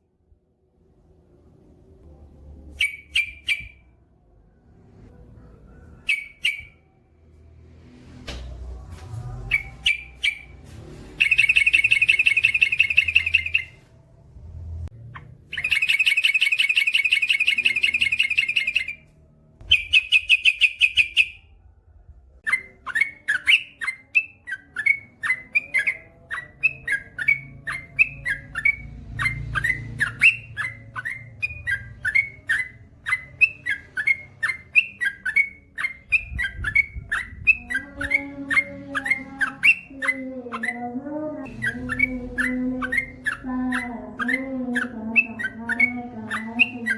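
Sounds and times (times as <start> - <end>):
bird quick repeated chirps: 2.7 - 3.8, 6.0 - 6.8, 9.5 - 13.8
bird chattering trills: 22.5 - 46.9.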